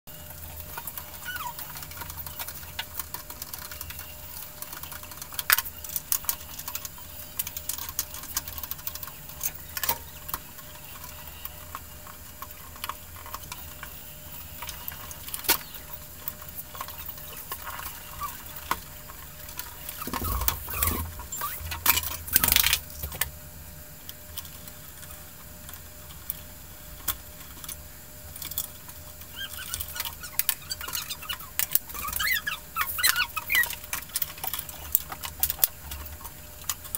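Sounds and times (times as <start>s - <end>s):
low steady hum: 0.1s - 36.9s.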